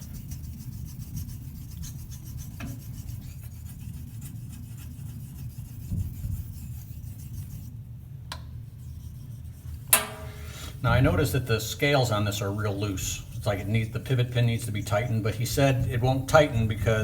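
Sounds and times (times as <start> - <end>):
razor rubbing on whetstone: 0.0 - 7.8.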